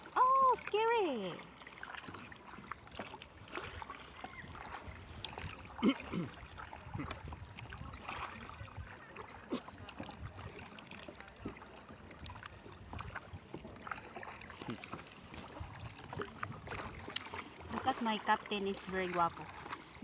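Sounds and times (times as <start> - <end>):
paddle splashing in water: 0.0 - 20.0
rush of water: 0.0 - 20.0
wind on microphone: 6.7 - 9.1, 15.2 - 20.0.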